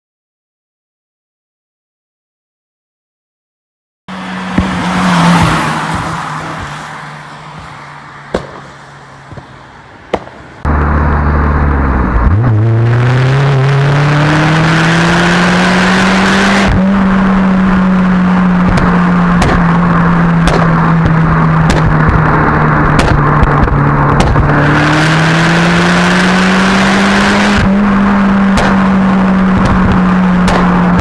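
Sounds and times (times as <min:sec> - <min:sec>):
car engine revving: 0:04.1 - 0:31.0
exhaust cracks: 0:04.2 - 0:12.6, 0:16.6 - 0:24.8, 0:26.4 - 0:31.0.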